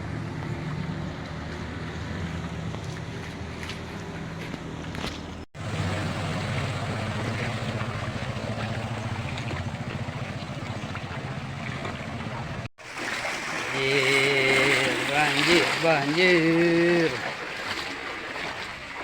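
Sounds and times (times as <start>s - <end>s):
rushing floodwater: 5.6s - 19.0s.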